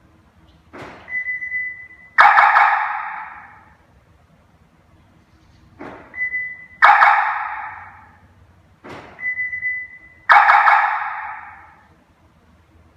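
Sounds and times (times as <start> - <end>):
car siren arrow sound effect: 2.2 - 3.6, 6.8 - 8.1, 9.6 - 11.7.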